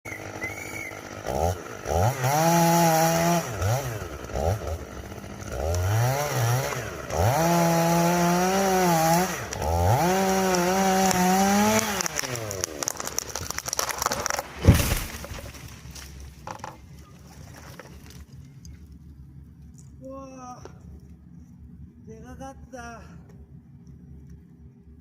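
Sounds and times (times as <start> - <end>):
chainsaw cutting into tree: 0.1 - 16.6.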